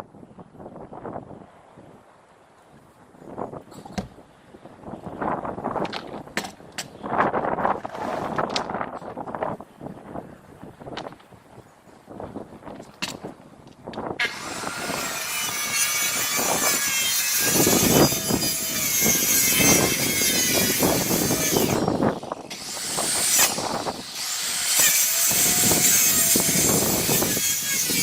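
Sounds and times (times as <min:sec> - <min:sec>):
power saw cutting wood: 0:14.2 - 0:28.0.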